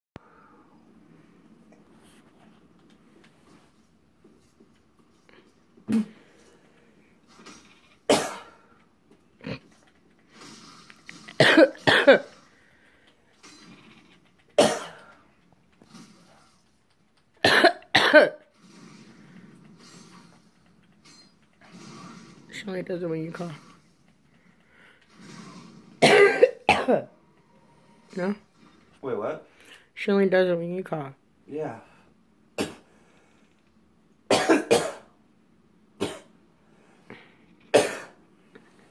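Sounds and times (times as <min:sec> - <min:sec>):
person coughing: 0:08.1 - 0:08.6, 0:11.3 - 0:12.4, 0:14.6 - 0:15.1, 0:17.4 - 0:18.4, 0:26.0 - 0:27.1, 0:34.3 - 0:35.1, 0:37.8 - 0:38.2.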